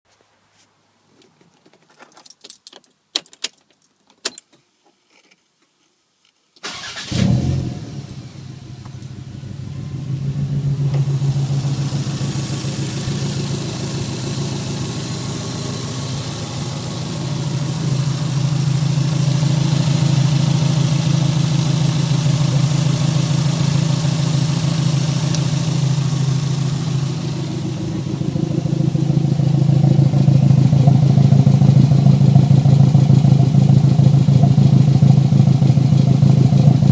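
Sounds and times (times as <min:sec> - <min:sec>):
exhaust popping: 0:06.6 - 0:17.7, 0:24.5 - 0:35.0
car engine cranking and idling: 0:06.6 - 0:36.9.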